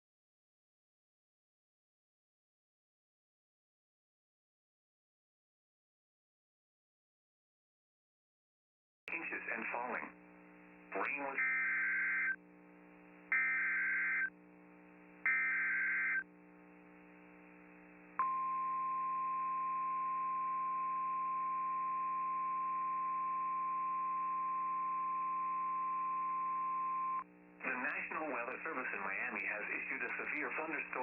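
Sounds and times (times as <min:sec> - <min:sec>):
steady warning alarm tone: 0:11.4 - 0:12.4, 0:13.3 - 0:14.3, 0:15.2 - 0:16.2.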